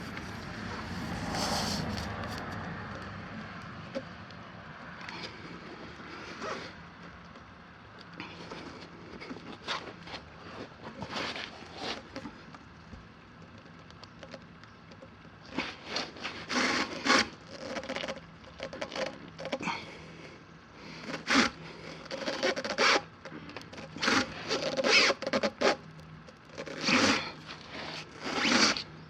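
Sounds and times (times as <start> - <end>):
tool scraping rubber: 0.0 - 2.6, 15.5 - 19.7, 20.9 - 25.8, 26.5 - 29.0.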